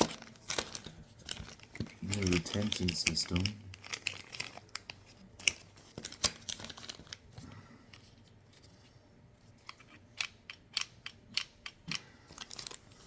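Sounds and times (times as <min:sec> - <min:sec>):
packaging crinkling: 0:00.0 - 0:07.4, 0:12.3 - 0:13.0.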